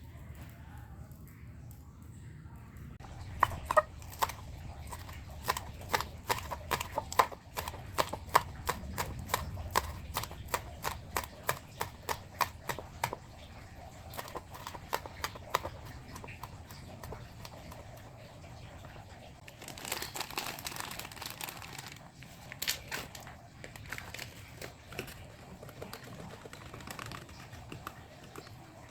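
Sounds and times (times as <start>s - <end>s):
knife chopping on cutting board: 3.1s - 18.0s.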